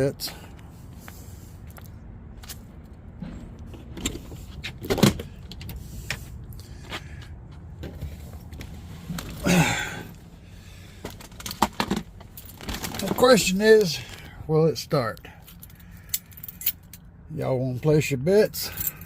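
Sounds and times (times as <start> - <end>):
handling clicks and knocks: 11.0 - 14.2.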